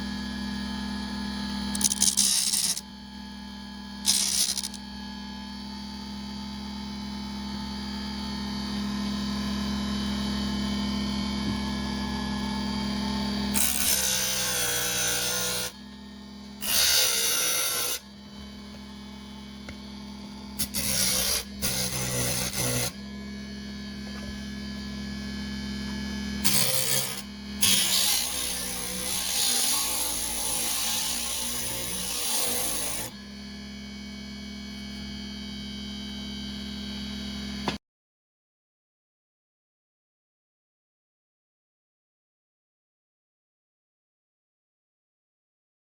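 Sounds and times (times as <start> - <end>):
table saw motor humming: 0.6 - 3.0, 3.8 - 5.7, 7.4 - 37.8
harsh saw cutting noise: 1.7 - 2.9, 4.0 - 4.8, 13.4 - 15.8, 16.6 - 18.7, 20.2 - 23.1, 26.4 - 33.2.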